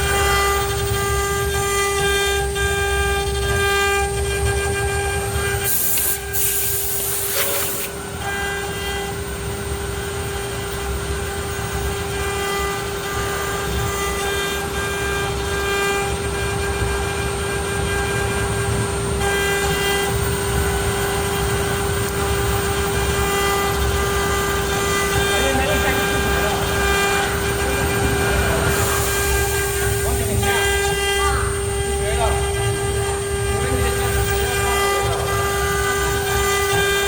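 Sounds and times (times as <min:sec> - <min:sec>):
cnc spindle high whine: 0:00.0 - 0:37.0
stepper motor tones: 0:00.0 - 0:37.0
short air hiss: 0:05.7 - 0:08.0
low rumble: 0:23.1 - 0:32.0.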